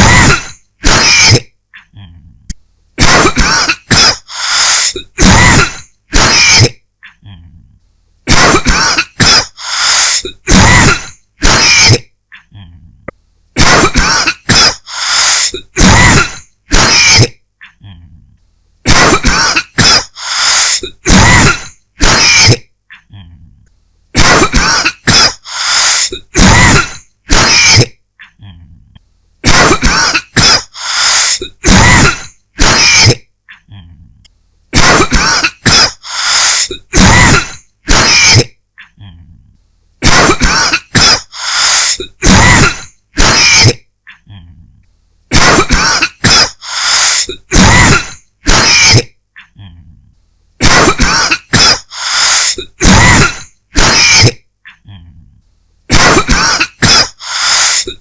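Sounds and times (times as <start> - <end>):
person coughing: 0.0 - 2.2, 3.0 - 7.4, 8.3 - 12.7, 13.6 - 17.4, 18.9 - 22.7, 24.2 - 28.0, 29.4 - 33.8, 34.8 - 39.2, 40.0 - 43.9, 45.3 - 49.6, 50.6 - 54.9, 55.9 - 58.0.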